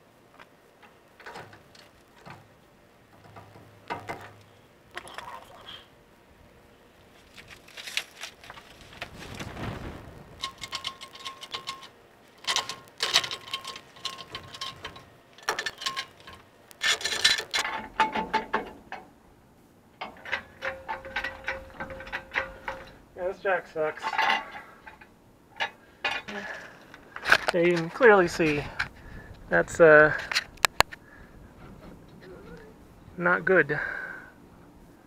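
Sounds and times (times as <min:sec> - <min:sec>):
metallic tool clinks and knocks: 0:10.4 - 0:16.4.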